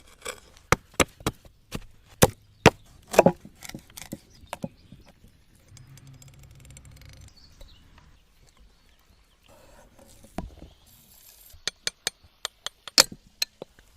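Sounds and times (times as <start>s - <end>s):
blade chopping wood: 0.7s - 4.8s.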